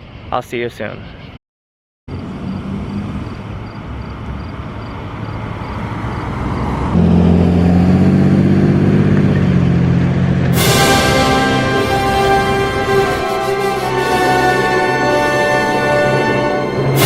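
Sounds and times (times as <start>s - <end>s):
road noise: 0.0s - 1.4s, 2.1s - 17.0s
car engine running: 2.1s - 10.6s.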